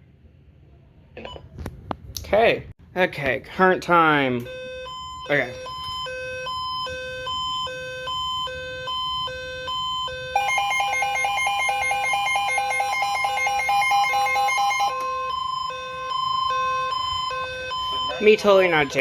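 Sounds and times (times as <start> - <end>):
steady alarm tone: 4.4 - 19.0
alternating two-pitch beep: 10.4 - 19.0
fast pulsing beep: 16.5 - 19.0.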